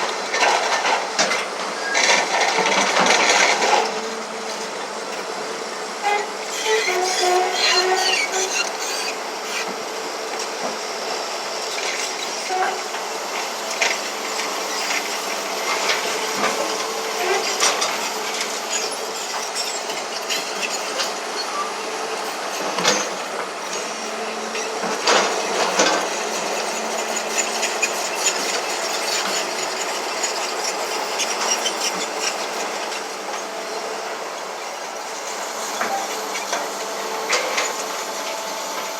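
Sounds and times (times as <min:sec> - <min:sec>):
bulldozer working: 0:00.0 - 0:38.9
knocks from bulldozer tracks: 0:00.1 - 0:05.2, 0:22.3 - 0:33.5.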